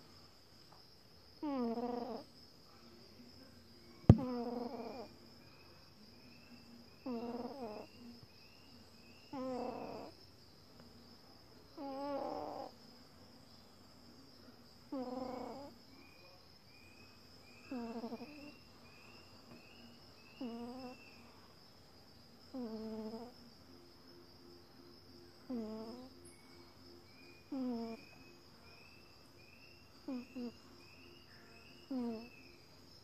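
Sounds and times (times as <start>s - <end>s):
kitten snoring: 1.4s - 2.3s, 4.1s - 5.1s, 7.0s - 7.9s, 9.3s - 10.2s, 11.8s - 12.7s, 14.9s - 15.8s, 17.7s - 18.5s, 20.4s - 21.0s, 22.5s - 23.4s, 25.5s - 26.1s, 27.5s - 28.1s, 30.0s - 30.5s, 31.9s - 32.4s.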